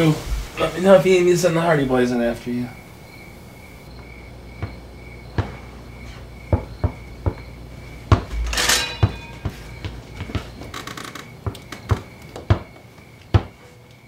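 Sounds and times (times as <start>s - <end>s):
faint pulsing chirp: 1.4s - 8.1s
dishes and cupboards clattering: 8.1s - 10.6s.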